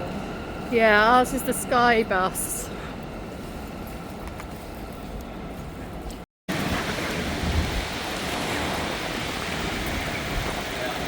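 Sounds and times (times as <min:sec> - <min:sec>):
passing traffic: 0:00.0 - 0:11.0
rain: 0:06.5 - 0:11.0.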